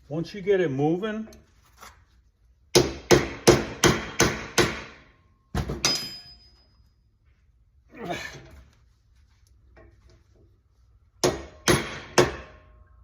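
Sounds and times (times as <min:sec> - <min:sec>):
hammer striking steel hinge: 0:02.8 - 0:05.0, 0:05.6 - 0:06.5, 0:11.2 - 0:12.7
metallic ring: 0:05.8 - 0:07.2.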